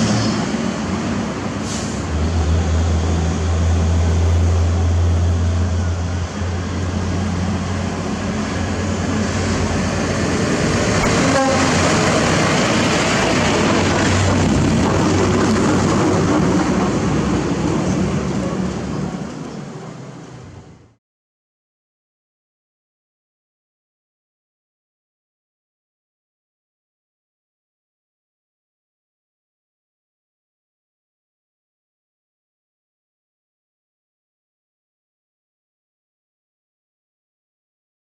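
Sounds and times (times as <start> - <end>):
heavy diesel engine running: 0.5 - 20.1.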